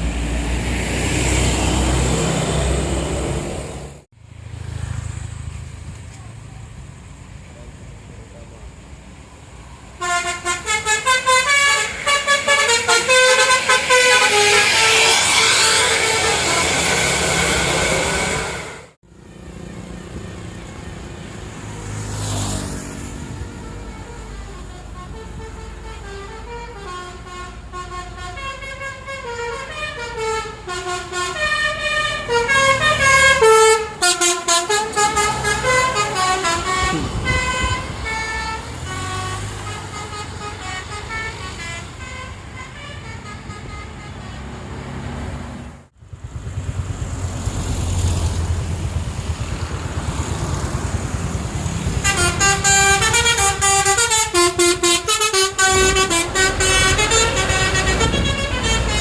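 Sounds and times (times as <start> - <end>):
bus engine running: 0.0 - 59.0
musical bus horn tune: 10.0 - 20.3, 23.2 - 44.9, 51.8 - 59.0.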